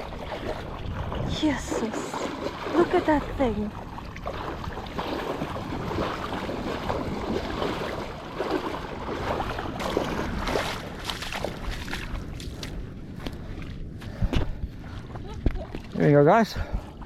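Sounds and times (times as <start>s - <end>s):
surf washing on beach: 0.0s - 12.2s
wind buffeting microphone: 0.0s - 17.0s.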